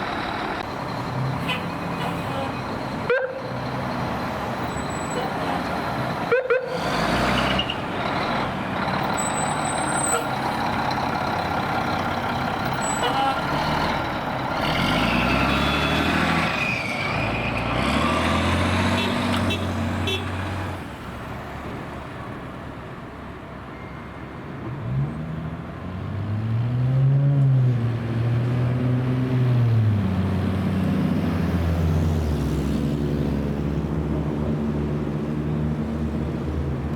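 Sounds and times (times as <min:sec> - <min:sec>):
diesel truck engine running: 0:00.0 - 0:17.2.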